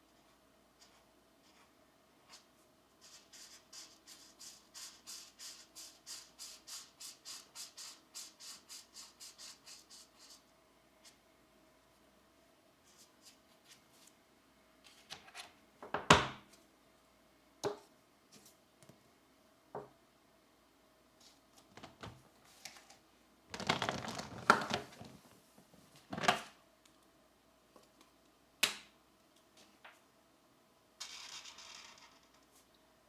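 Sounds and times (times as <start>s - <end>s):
paper rustling: 23.6s - 25.3s.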